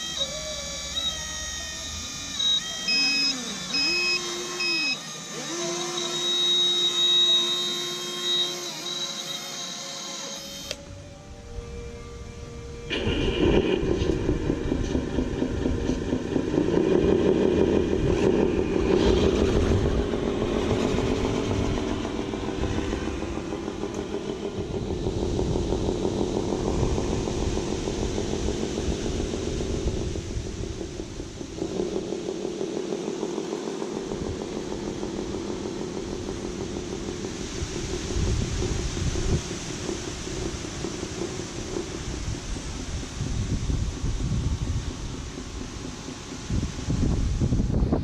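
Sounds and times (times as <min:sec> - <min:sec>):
toy truck motor running: 0:00.0 - 0:48.0
wind buffeting microphone: 0:10.9 - 0:48.0.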